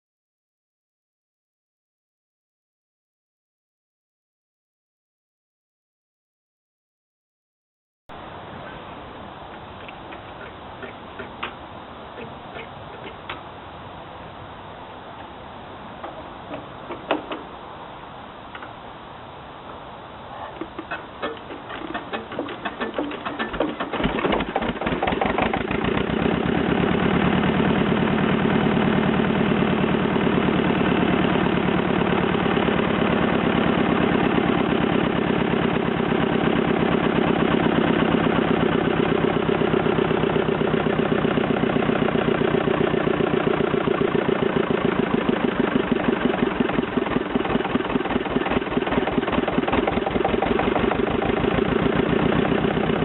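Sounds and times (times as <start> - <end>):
diesel engine starting and running: 20.5 - 53.0.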